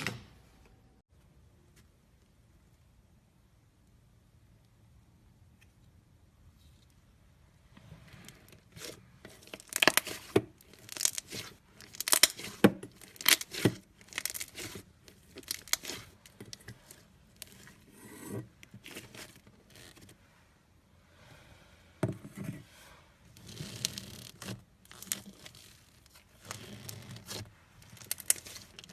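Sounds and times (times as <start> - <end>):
slime squeezed sticky crackles: 24.3 - 28.9.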